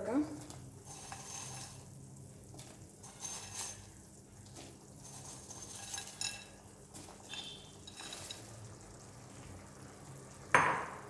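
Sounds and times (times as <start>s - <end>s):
boiling water: 0.0s - 11.0s
noodle pieces clinking into pan: 2.5s - 8.8s.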